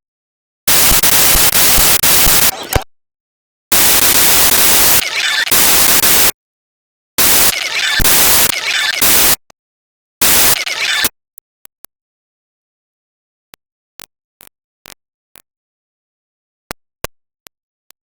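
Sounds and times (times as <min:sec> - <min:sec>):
loud static hiss: 0:00.7 - 0:02.8, 0:03.7 - 0:06.4, 0:07.2 - 0:09.4, 0:10.2 - 0:11.1.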